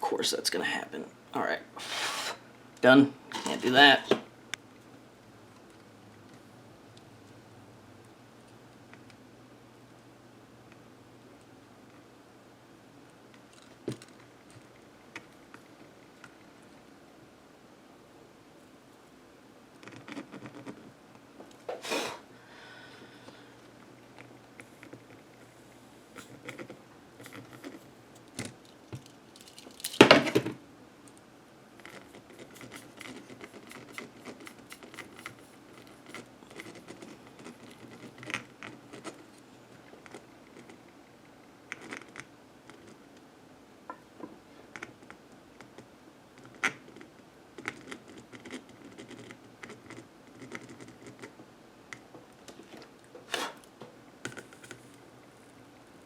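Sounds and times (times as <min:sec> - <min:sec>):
small tools clicking and scraping: 0:26.2 - 0:30.0.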